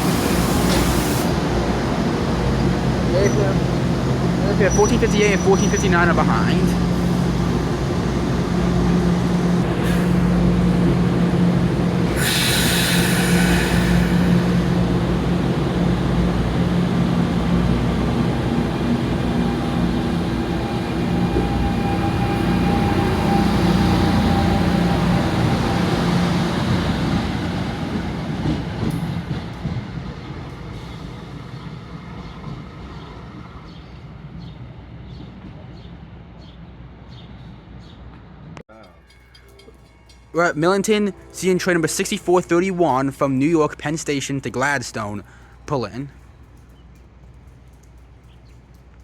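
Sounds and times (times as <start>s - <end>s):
air hiss: 0.0s - 1.4s, 12.1s - 15.5s
electric train hum and rumble: 0.0s - 38.6s.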